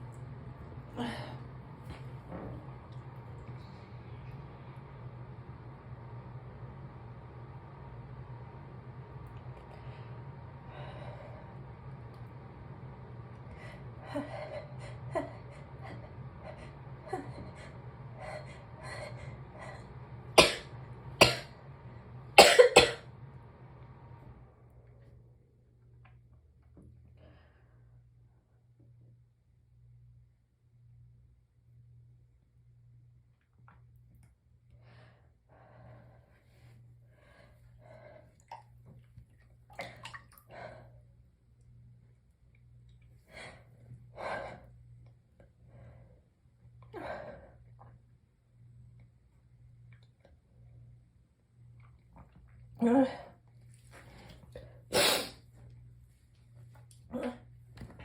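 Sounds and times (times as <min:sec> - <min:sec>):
low steady hum: 0:00.0 - 0:58.0
person sneezing: 0:20.4 - 0:21.5, 0:22.4 - 0:23.0, 0:54.9 - 0:55.4.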